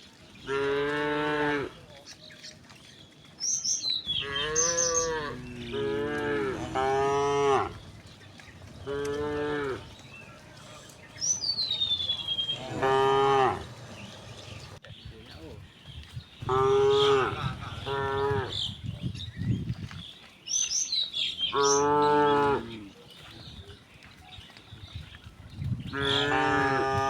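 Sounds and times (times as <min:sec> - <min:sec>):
cows mooing: 0:00.4 - 0:01.8, 0:04.1 - 0:08.0, 0:08.7 - 0:14.8, 0:16.4 - 0:18.8, 0:21.5 - 0:22.9, 0:25.9 - 0:27.0
bird chirps: 0:01.9 - 0:05.7, 0:10.0 - 0:12.7.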